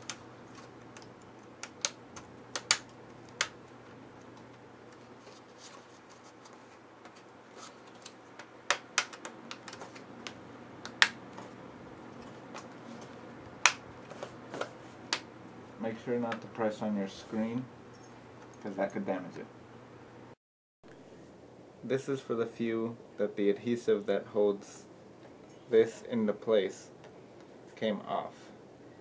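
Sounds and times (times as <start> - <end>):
plastic clips snapping: 0.0 - 3.6, 7.8 - 11.2.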